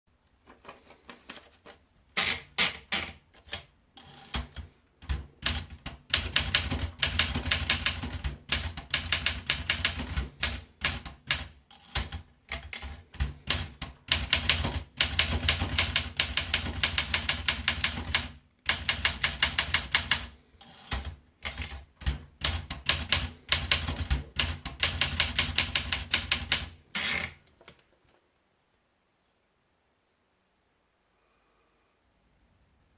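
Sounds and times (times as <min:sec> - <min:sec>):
typewriter keystrokes: 0:02.2 - 0:26.8.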